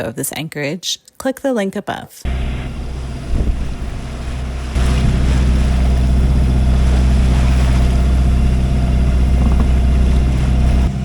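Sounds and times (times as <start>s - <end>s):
boat engine droning: 2.3s - 11.0s.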